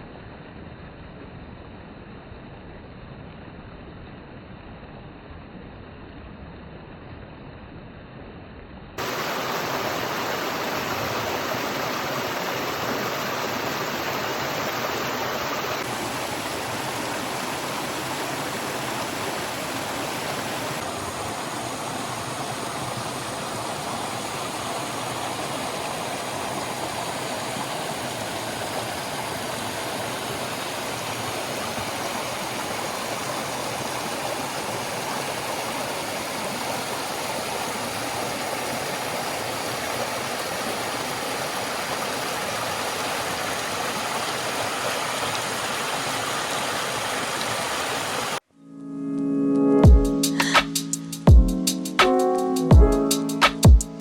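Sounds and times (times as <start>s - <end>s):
stream water flowing: 9.0s - 48.4s.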